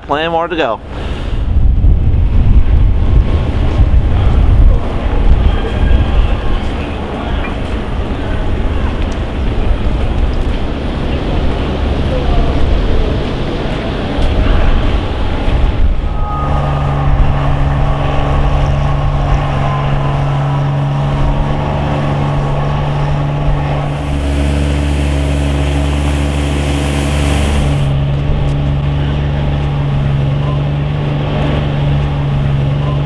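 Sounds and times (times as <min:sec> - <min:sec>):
vehicle engine droning: 0:00.8 - 0:33.0
wind noise: 0:00.8 - 0:33.0
loud hiss: 0:23.8 - 0:28.0.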